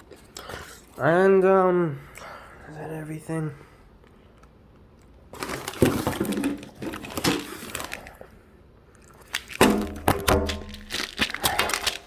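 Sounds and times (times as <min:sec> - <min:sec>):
snack packaging crackling: 0:05.0 - 0:08.3, 0:09.0 - 0:12.0.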